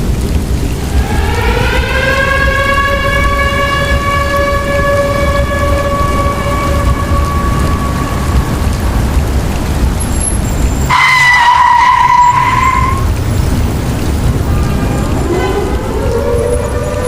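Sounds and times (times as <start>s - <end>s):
low rumble: 0.0s - 11.0s, 11.8s - 17.0s
high squeal rising in pitch: 0.7s - 9.1s, 10.2s - 13.2s, 14.5s - 17.0s.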